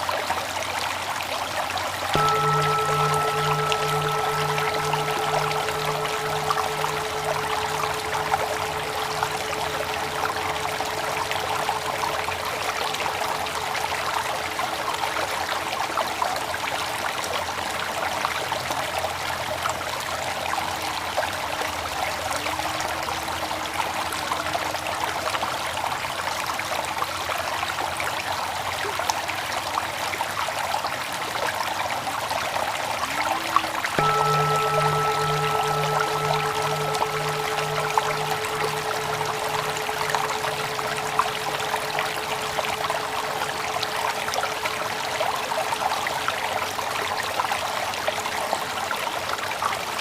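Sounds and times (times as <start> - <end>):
stream water flowing: 0.0 - 18.4, 28.5 - 50.0
bell ringing: 2.2 - 15.1, 34.0 - 46.6.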